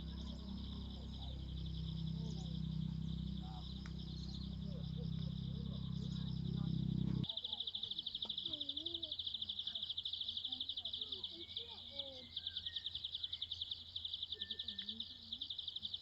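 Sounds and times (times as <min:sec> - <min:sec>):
low rumble: 0:00.0 - 0:07.3
bird chirps: 0:00.0 - 0:16.0
insects trilling: 0:00.0 - 0:16.0.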